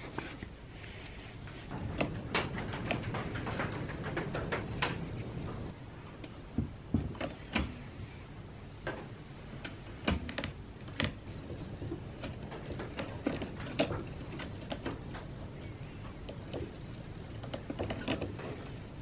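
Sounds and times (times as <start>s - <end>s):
manual typewriter clacking: 1.7s - 5.8s, 9.6s - 19.0s.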